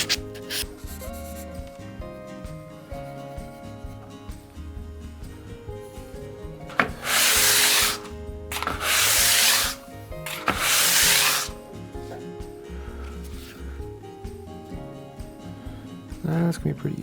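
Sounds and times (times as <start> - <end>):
tool scraping over surface: 0.0 - 0.7, 6.7 - 11.6
background music: 0.0 - 17.0.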